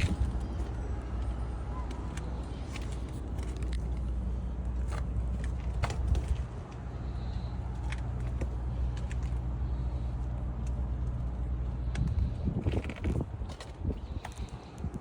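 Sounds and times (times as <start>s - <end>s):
handling noises: 0.0s - 11.2s
car engine idling: 0.0s - 14.9s.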